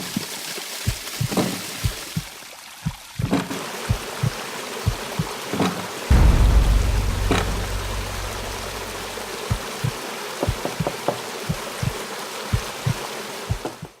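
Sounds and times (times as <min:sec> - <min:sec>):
low rumble: 0:06.1 - 0:09.3
soft low thumps: 0:06.1 - 0:09.6.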